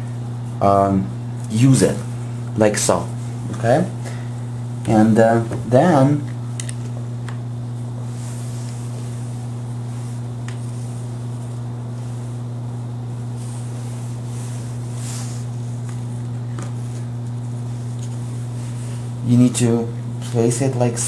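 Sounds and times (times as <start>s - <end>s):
low electrical hum: 0.0s - 21.0s.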